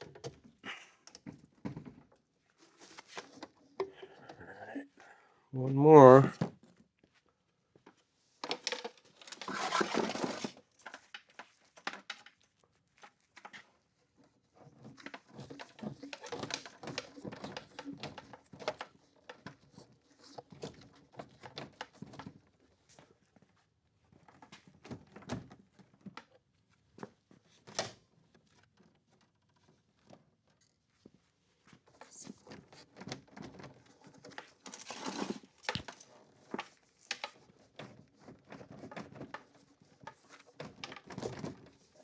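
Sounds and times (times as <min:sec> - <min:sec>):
clicks and small knocks: 0:33.4 - 0:37.4.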